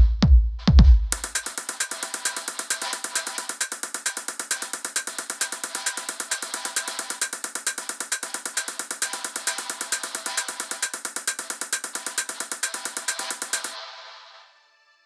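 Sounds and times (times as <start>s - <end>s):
electronic drum beat music: 0.0s - 13.8s.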